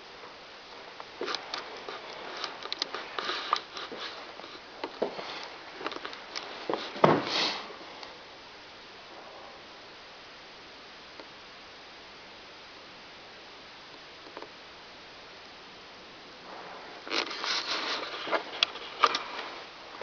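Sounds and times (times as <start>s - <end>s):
rustling: 0.2s - 8.2s, 16.4s - 20.0s.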